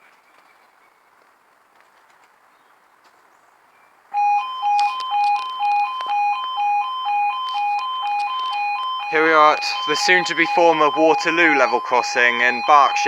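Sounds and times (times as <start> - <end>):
level crossing warning alarm: 4.1 - 13.0.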